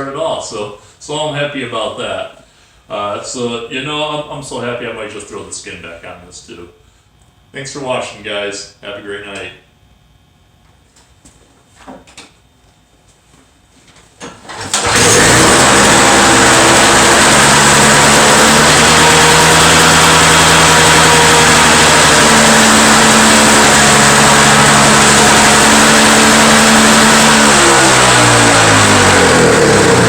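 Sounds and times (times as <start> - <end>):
snow blower engine running: 14.4 - 30.0.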